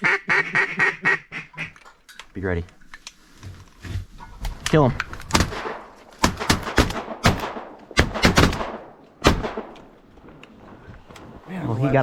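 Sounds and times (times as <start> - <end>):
shotgun blasts with echo: 5.3 - 9.8.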